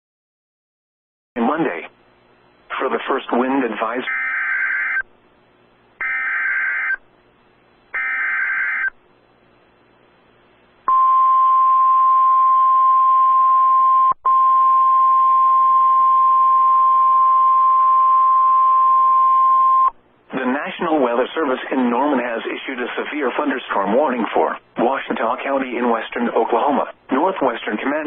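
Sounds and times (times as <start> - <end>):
radio hiss: 2.7 - 4.1
steady alarm tone: 4.1 - 5.0, 6.0 - 7.0, 7.9 - 9.0.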